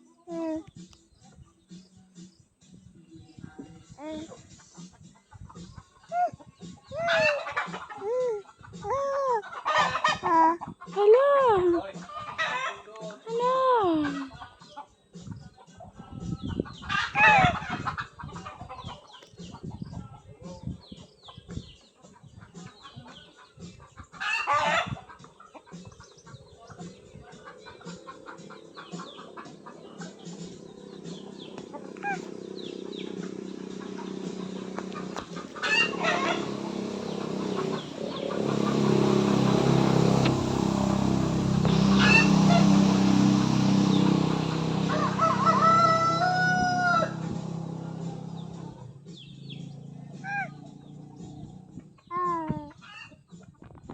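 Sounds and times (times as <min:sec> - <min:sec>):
chickens clucking: 0:04.0 - 0:11.2, 0:16.5 - 0:20.0, 0:22.2 - 0:40.6, 0:41.6 - 0:48.9
high falling chirps: 0:28.0 - 0:50.0.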